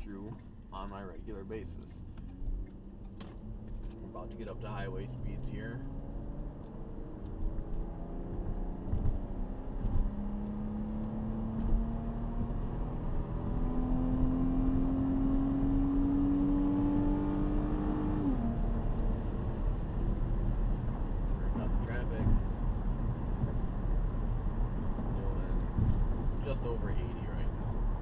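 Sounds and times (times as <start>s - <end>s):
road noise: 0.0s - 28.0s
engine drone rising in pitch: 1.7s - 21.6s.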